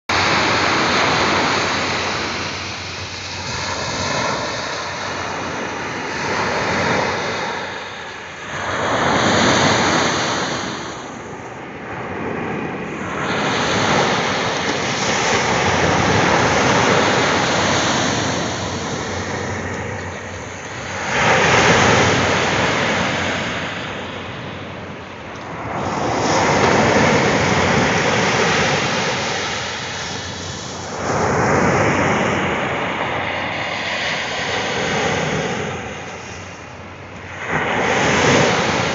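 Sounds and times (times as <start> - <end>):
ocean waves breaking: 0.1 - 38.9.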